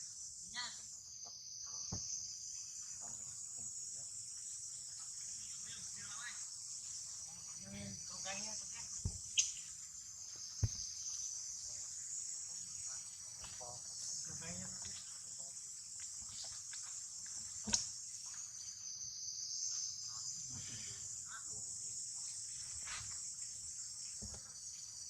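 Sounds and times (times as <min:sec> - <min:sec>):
insect chorus chirring: 0:00.0 - 0:25.0.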